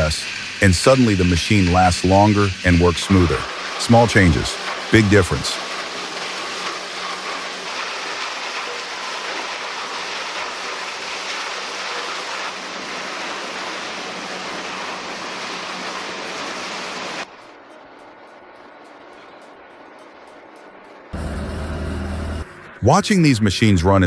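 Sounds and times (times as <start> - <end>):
wood-processing machine rushing: 0.0 - 17.3, 21.2 - 22.7
faint machine hum: 0.0 - 23.6.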